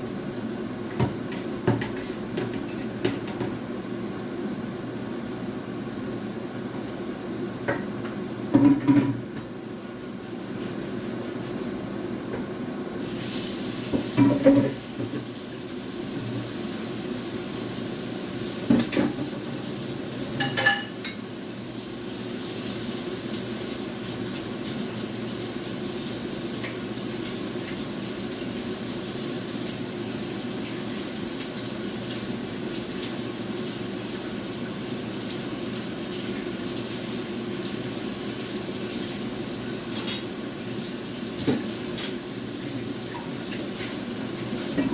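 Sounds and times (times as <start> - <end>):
steady low hum: 12.6 - 44.9
steady hiss: 13.0 - 44.9
pots and pans clattering: 14.0 - 15.3, 20.4 - 21.2.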